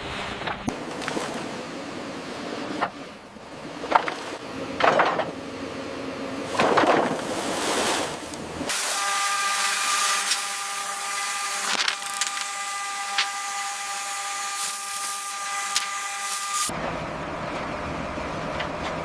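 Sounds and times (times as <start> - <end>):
machine high whine: 8.6 - 18.8.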